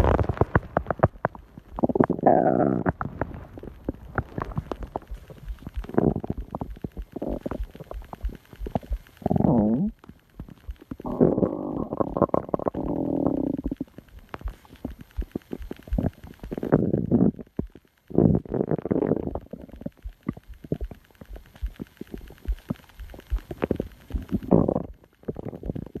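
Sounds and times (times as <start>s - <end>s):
stomach growling: 0.0s - 26.0s.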